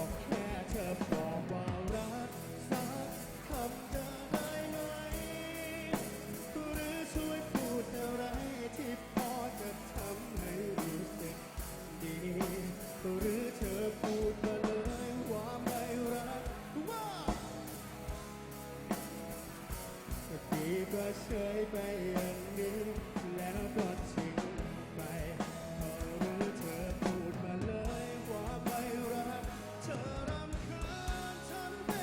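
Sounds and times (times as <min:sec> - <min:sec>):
drum kit beat: 0:00.0 - 0:32.0
rock band playing live: 0:00.0 - 0:32.0
sung lead melody: 0:00.0 - 0:32.0.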